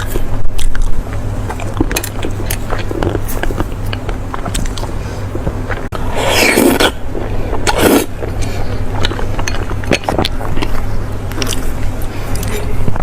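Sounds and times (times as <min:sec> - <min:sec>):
chewing: 0:00.6 - 0:06.0
steady low hum: 0:00.6 - 0:06.2.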